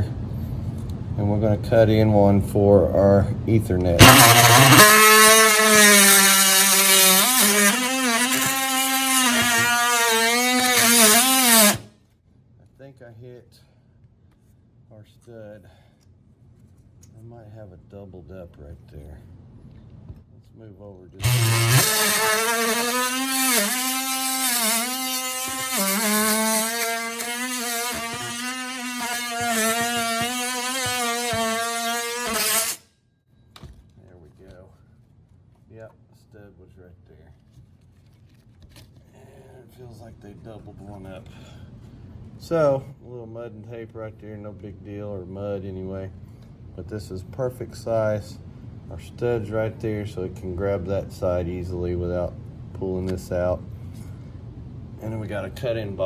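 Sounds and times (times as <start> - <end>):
multi-tool cutting drywall: 3.9 - 11.9, 21.2 - 32.9.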